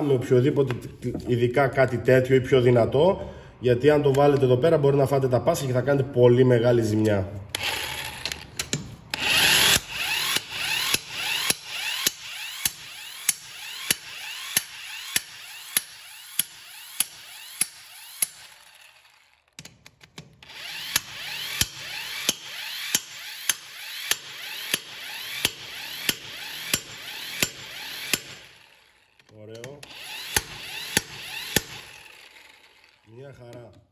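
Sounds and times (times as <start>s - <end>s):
impact wrench hammering: 7.5s - 33.0s.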